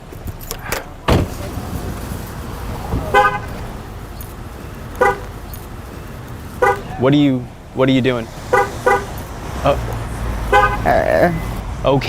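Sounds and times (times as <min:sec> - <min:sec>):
sharp thump: 0:01.1 - 0:02.0
car horn short beeps: 0:03.0 - 0:03.7, 0:05.0 - 0:05.3, 0:06.6 - 0:06.9, 0:10.5 - 0:11.6.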